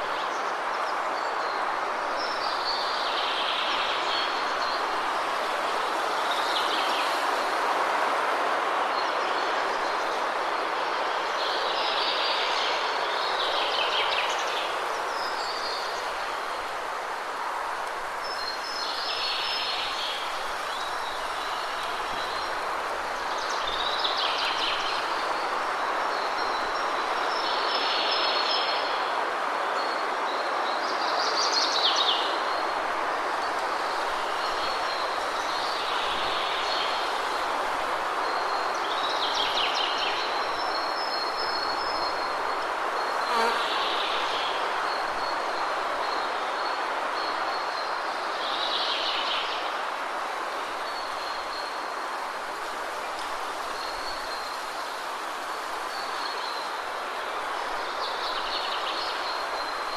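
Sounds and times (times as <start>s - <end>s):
waterfall rushing: 32.2s - 59.9s.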